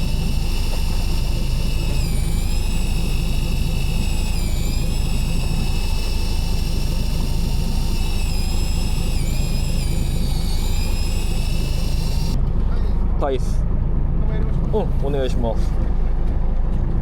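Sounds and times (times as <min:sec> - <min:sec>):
electric fishing reel whining: 0:00.0 - 0:12.9.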